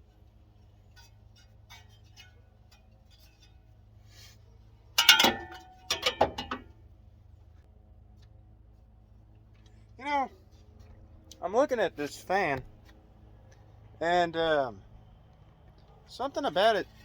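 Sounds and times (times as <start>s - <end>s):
metal tools clanking: 4.9s - 6.7s.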